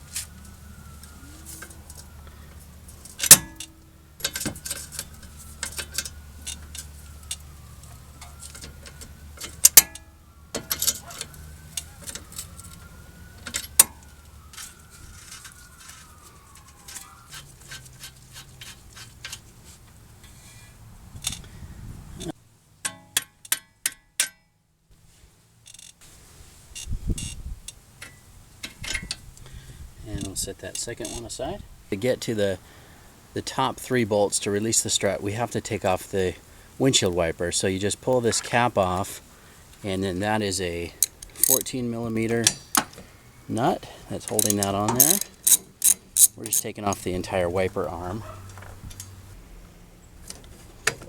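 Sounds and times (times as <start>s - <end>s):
metallic tool clicks: 41.0s - 41.7s, 44.4s - 46.7s
bolt squeaking: 41.0s - 41.8s, 44.2s - 47.1s.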